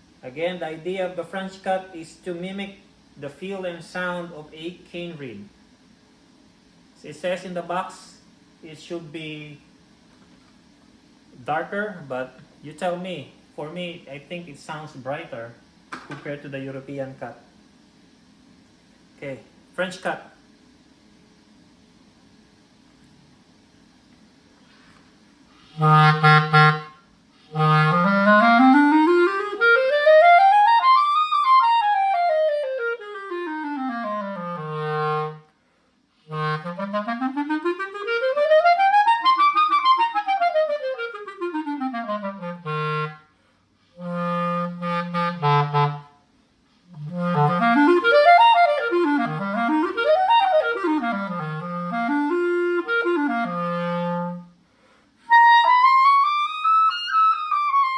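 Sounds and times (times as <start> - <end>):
clarinet playing scales: 25.6 - 35.5, 36.2 - 46.2, 46.9 - 54.6, 55.2 - 57.9.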